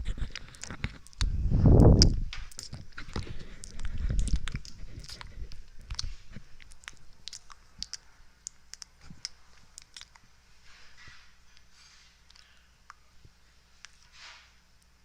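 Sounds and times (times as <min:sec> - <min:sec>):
wet tongue and lip clicks: 0:00.0 - 0:10.3, 0:12.3 - 0:13.1.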